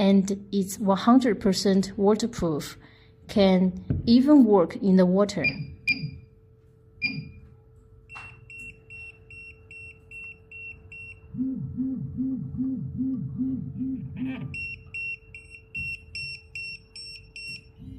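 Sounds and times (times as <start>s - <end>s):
high electronic beeping: 7.0s - 7.4s.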